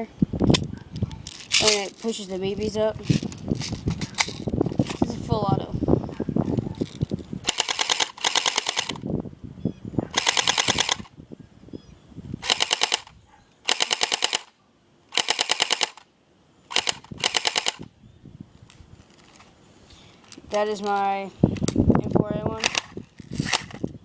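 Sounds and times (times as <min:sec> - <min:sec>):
airsoft rifle firing bursts: 0:07.4 - 0:09.0, 0:10.1 - 0:11.1, 0:12.4 - 0:14.5, 0:15.1 - 0:16.0, 0:16.7 - 0:17.8, 0:22.6 - 0:23.7.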